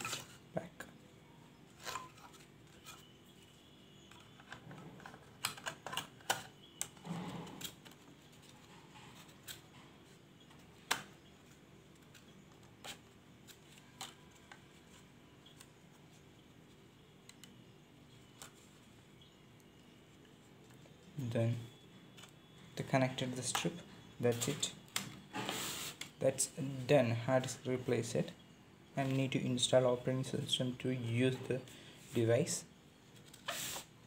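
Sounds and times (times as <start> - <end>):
clicks of laptop parts: 10.4 - 11.2.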